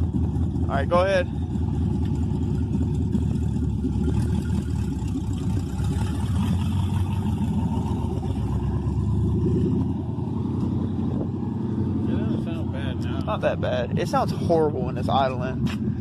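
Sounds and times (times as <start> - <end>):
loud car engine running: 0.0 - 16.0.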